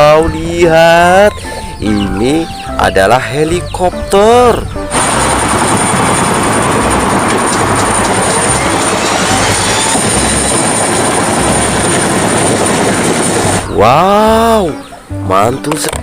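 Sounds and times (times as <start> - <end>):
helicopter engine and rotor: 4.9 - 13.7.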